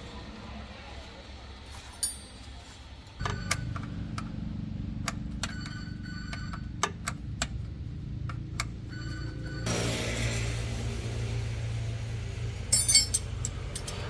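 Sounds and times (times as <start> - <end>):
metal clinking against metal: 1.7 - 2.6, 12.7 - 14.0.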